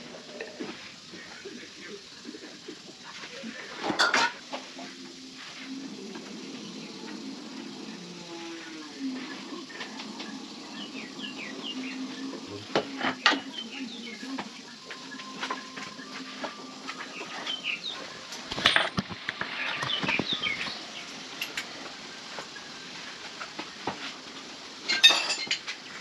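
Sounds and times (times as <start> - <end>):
metal hand tools clinking: 24.9 - 25.6.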